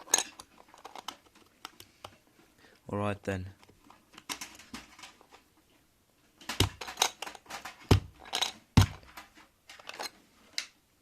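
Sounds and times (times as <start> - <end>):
sharp knocks: 6.5 - 6.9, 7.8 - 8.2, 8.8 - 9.2.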